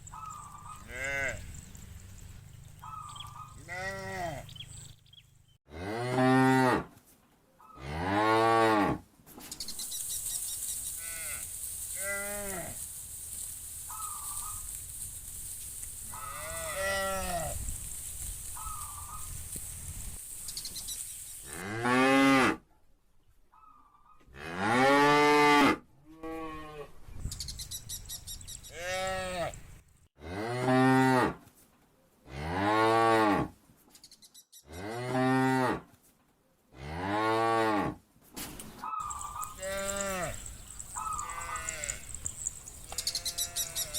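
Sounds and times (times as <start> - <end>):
cows mooing: 0.7 - 1.6, 16.2 - 17.6, 39.0 - 43.9.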